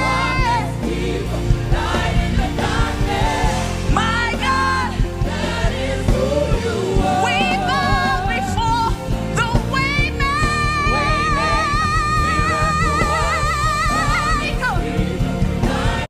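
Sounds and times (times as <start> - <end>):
band playing gospel music: 0.0 - 16.0
person singing with vibrato: 6.2 - 15.4.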